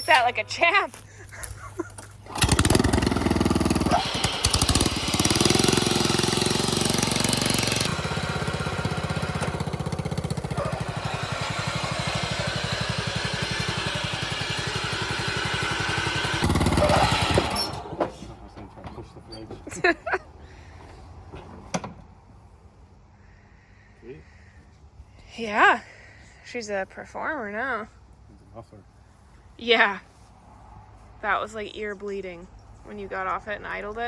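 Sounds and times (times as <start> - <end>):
riding lawn mower engine: 1.8 - 22.0
loud belt and pulley racket: 2.2 - 18.2.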